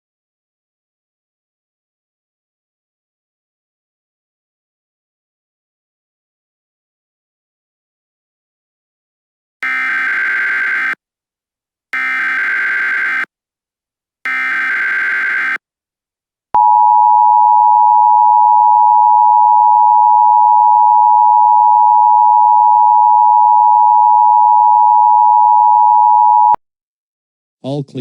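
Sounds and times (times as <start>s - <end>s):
digital data bursts: 9.6s - 11.0s, 12.0s - 13.3s, 14.3s - 15.6s
two-tone attention signal: 9.6s - 11.0s, 14.3s - 15.6s.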